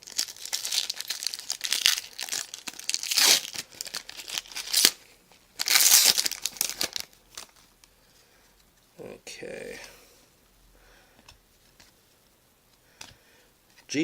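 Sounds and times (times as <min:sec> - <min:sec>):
foil wrapper tearing and crinkling: 0:00.0 - 0:05.0, 0:05.6 - 0:07.6.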